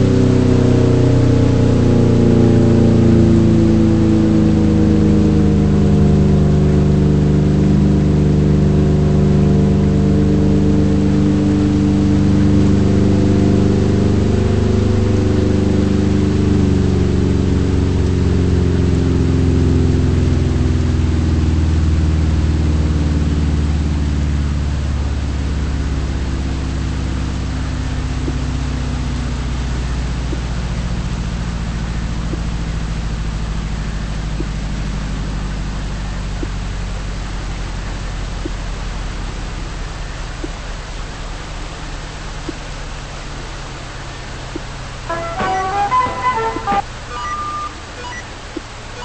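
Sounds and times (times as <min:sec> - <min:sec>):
warning siren winding down: 0:00.0 - 0:23.5, 0:45.0 - 0:49.0.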